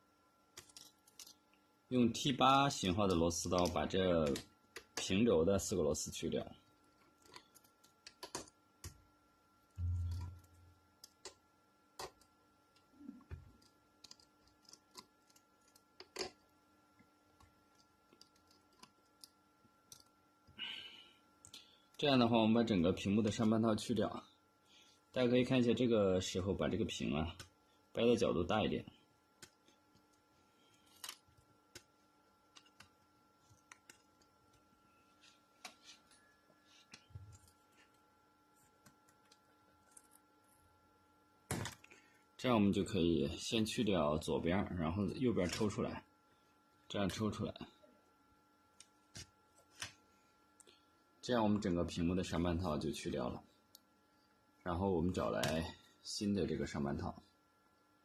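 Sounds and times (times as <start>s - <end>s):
laptop parts clicking and knocking: 0.5s - 1.4s, 6.9s - 9.0s, 12.0s - 12.3s, 13.2s - 16.4s, 32.5s - 33.0s.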